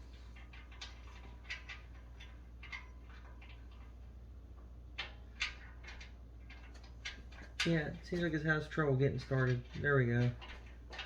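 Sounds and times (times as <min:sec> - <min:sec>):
clicks and taps of metal parts: 0:04.9 - 0:11.0.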